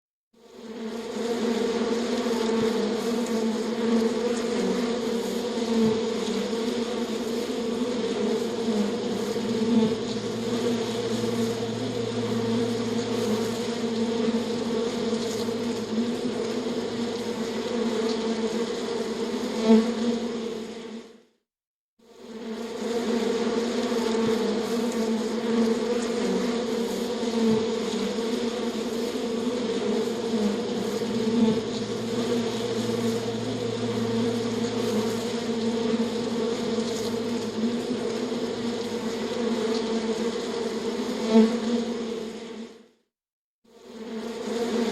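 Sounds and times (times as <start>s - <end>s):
deeper insect buzz: 0.4s - 21.2s, 22.0s - 42.9s, 43.7s - 44.9s
flying insects buzzing: 0.4s - 21.2s, 22.1s - 42.8s, 43.7s - 44.9s.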